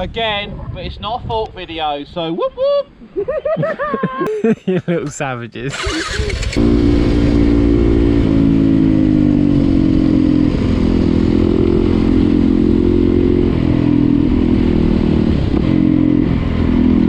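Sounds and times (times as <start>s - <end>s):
motorcycle engine running: 5.7s - 16.0s.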